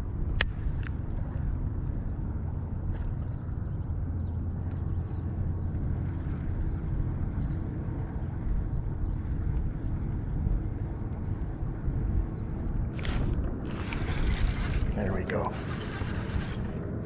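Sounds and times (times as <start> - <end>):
wind and water rumble: 0.0 - 17.0
faint light ticks: 5.9 - 12.5.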